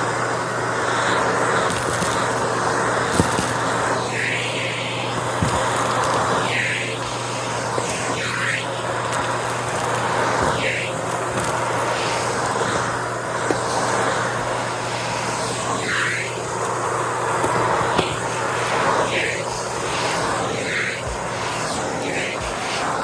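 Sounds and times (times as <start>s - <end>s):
vacuum cleaner running: 0.0s - 23.0s
debris clicking in vacuum: 1.6s - 2.4s, 3.0s - 3.7s.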